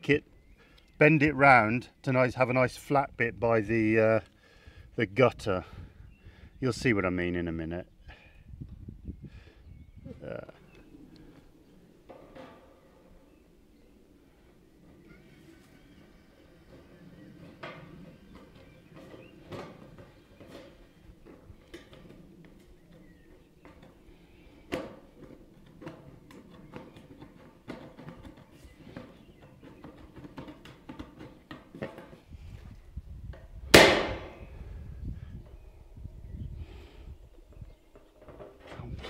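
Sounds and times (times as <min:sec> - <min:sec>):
loud sharp knock: 0:33.8 - 0:34.4.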